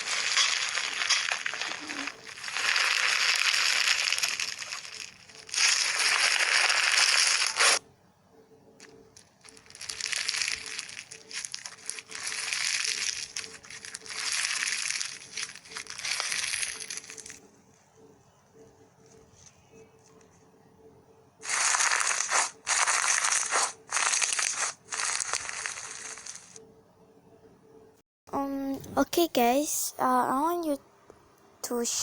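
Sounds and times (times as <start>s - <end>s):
crushing and crunching: 0.0s - 7.8s, 8.8s - 17.4s, 21.4s - 26.6s.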